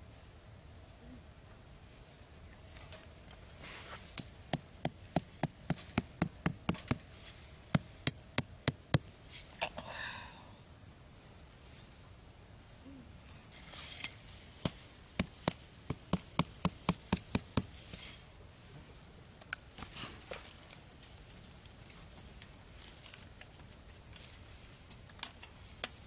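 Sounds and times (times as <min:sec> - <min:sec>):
scraping rustle: 0:01.9 - 0:04.2, 0:13.2 - 0:14.6.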